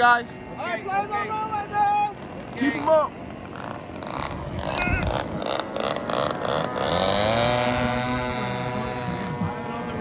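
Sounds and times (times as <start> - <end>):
model airplane engine revving: 2.1 - 10.0.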